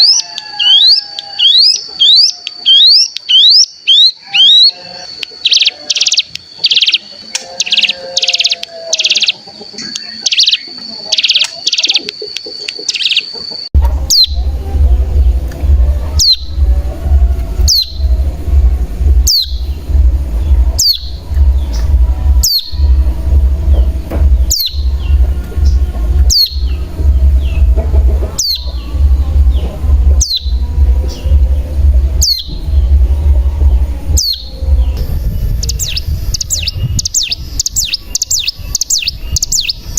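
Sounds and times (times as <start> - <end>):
steady low rumble: 13.7 - 39.9.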